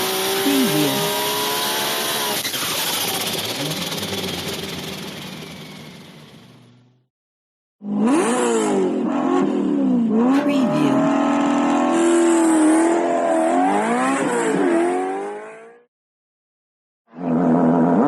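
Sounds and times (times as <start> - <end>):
rally car engine revving: 0.0 - 6.2, 7.8 - 15.9.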